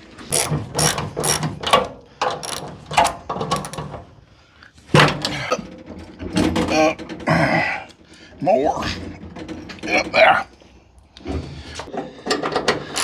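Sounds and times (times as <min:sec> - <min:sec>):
ratchet wrench clicking: 0:00.3 - 0:01.5, 0:02.4 - 0:03.8.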